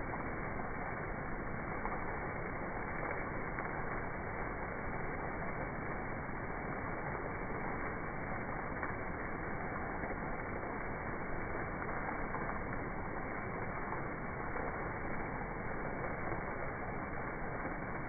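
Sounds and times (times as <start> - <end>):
steady rainfall: 0.0 - 18.0.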